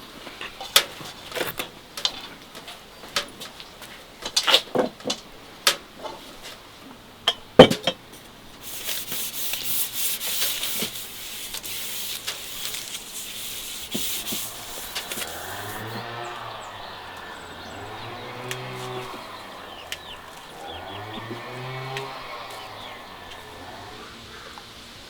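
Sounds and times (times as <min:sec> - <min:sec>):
brisk rubbing strokes: 0:08.6 - 0:24.4
cow lowing: 0:13.2 - 0:24.8.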